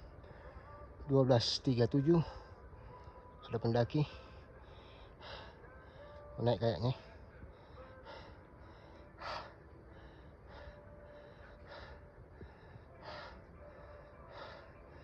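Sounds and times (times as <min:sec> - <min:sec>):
person breathing hard: 0:04.1 - 0:06.4, 0:07.0 - 0:15.0.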